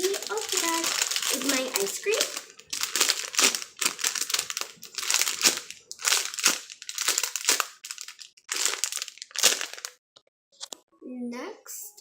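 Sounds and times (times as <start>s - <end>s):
foam toy squeezed crinkling: 0.0s - 10.0s.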